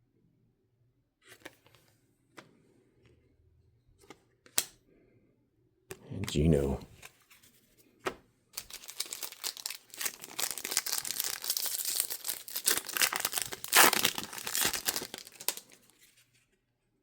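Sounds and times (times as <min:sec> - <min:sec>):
plastic wrapper crinkling: 0:08.6 - 0:16.1.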